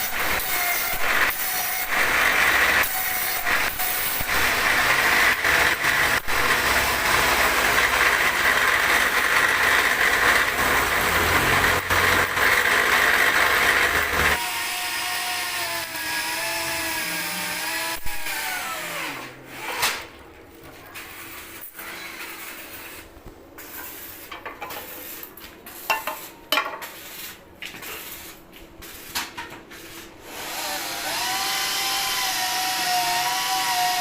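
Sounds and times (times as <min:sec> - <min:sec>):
machine rattling harshly: 0:00.3 - 0:14.4
motor hum winding down: 0:05.6 - 0:14.4.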